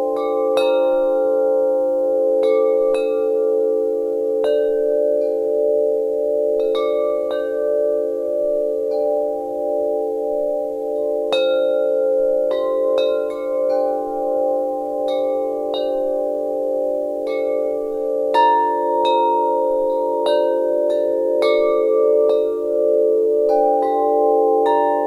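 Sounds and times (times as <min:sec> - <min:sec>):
wind chimes ringing: 0:00.0 - 0:25.0.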